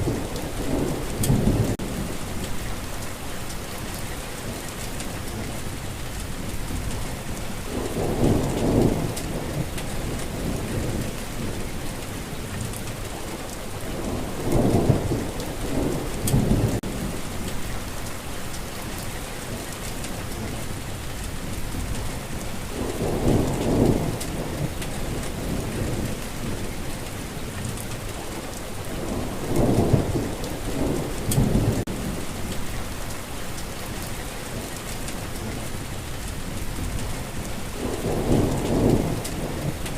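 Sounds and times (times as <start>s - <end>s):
steady rain falling: 0.0s - 39.9s
rolls of thunder: 37.8s - 39.9s.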